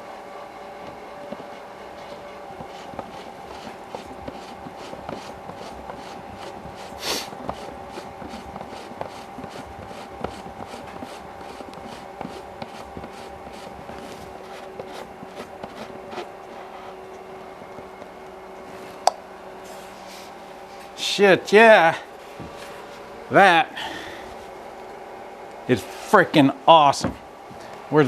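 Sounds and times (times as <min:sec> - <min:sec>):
plastic rasping scrape: 0:00.9 - 0:18.2.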